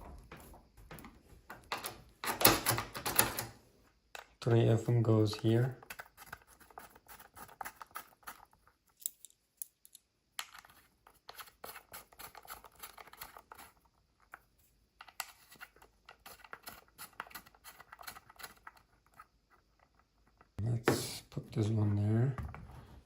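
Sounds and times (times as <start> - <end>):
door lock hardware clicking: 1.6 - 3.5.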